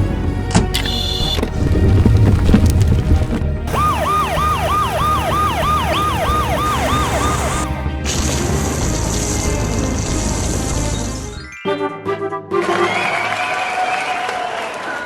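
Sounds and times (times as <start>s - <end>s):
background music: 0.0s - 13.8s
siren yelp: 3.7s - 7.7s.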